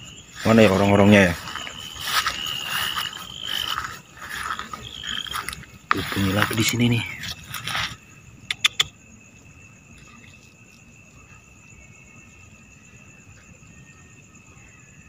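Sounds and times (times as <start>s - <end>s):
mole cricket high trill: 0.0s - 15.0s
sharp clicks: 8.5s - 8.9s.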